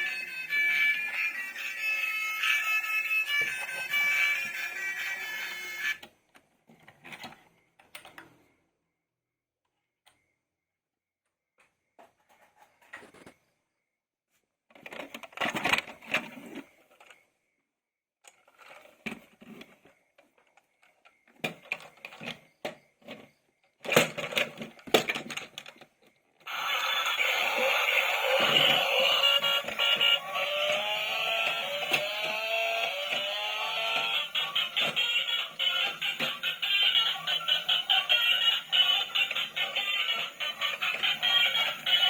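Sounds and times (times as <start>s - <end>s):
plastic toys clicking and rattling: 23.8s - 30.8s, 31.4s - 42.0s.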